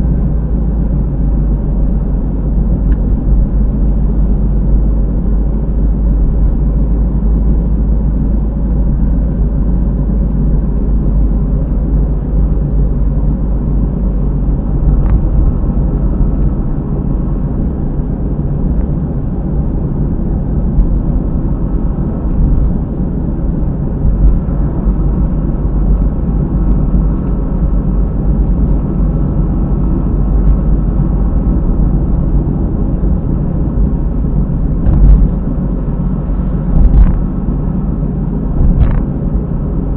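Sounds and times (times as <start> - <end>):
road and tyre rumble: 0.0 - 39.9
wheel bearing drone: 0.0 - 39.9.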